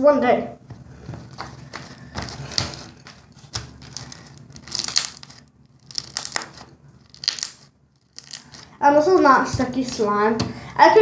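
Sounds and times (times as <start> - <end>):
slime crackling and popping: 2.3 - 8.8.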